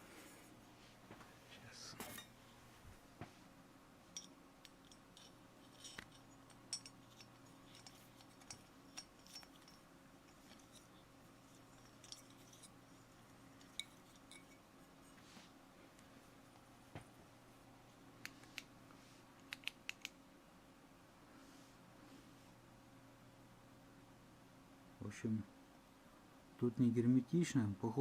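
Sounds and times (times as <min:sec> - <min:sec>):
low steady hum: 0:00.0 - 0:28.0
metal parts clicking and clinking: 0:04.1 - 0:14.7.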